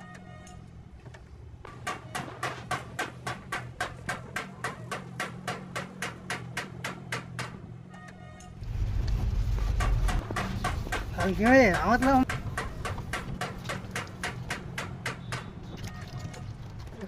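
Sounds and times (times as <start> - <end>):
rapid evenly spaced knocks: 1.7 - 7.8, 9.2 - 15.8.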